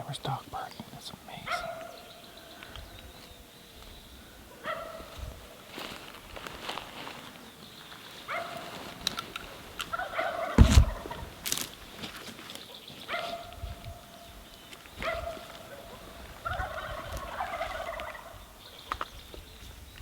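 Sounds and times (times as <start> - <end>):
wild turkey gobbling: 9.8 - 11.5, 15.0 - 18.9
loud low thump: 10.6 - 11.4.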